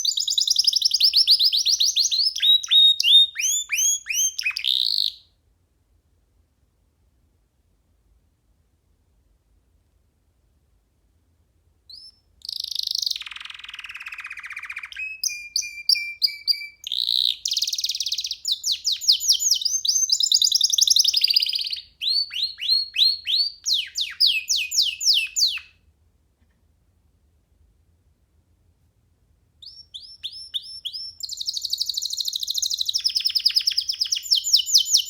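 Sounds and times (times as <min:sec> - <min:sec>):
canary singing: 0:00.0 - 0:05.3, 0:11.9 - 0:25.8, 0:29.6 - 0:35.0.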